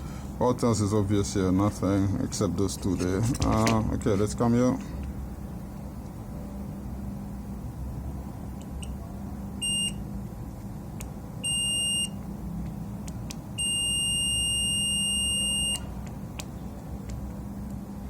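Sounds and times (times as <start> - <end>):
multimeter beeps: 9.6 - 10.0, 11.4 - 12.2, 13.6 - 15.9.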